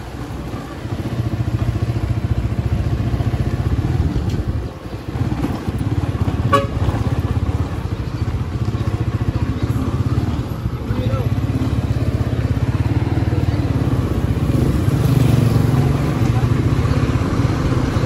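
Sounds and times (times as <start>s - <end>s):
motorcycle engine running: 0.0s - 18.0s
short horn toot: 6.5s - 6.9s.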